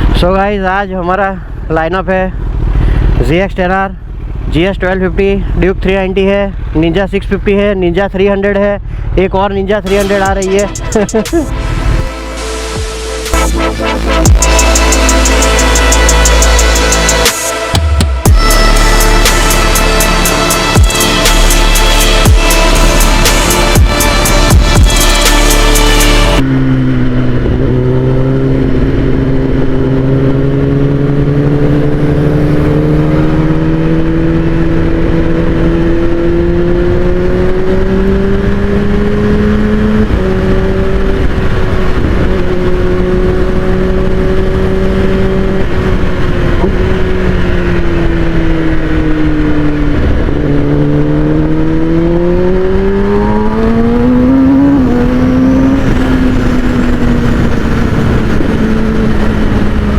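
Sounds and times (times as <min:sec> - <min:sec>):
motorcycle engine revving: 0:10.1 - 0:59.9.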